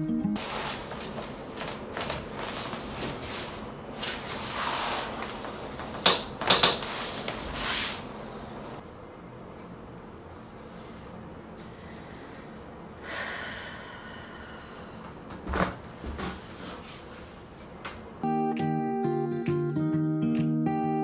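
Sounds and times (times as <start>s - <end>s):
rustling on treatment table: 0.4s - 8.8s, 15.2s - 18.2s.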